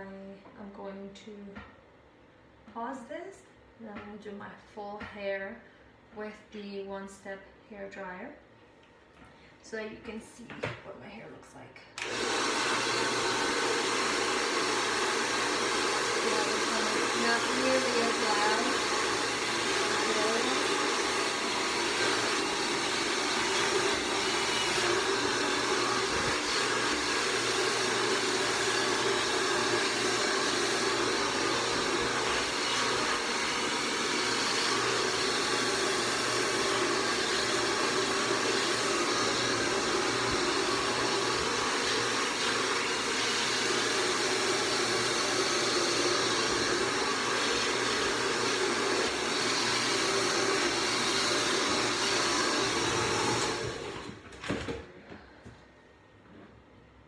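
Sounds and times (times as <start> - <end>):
hair dryer running: 12.0 - 54.9.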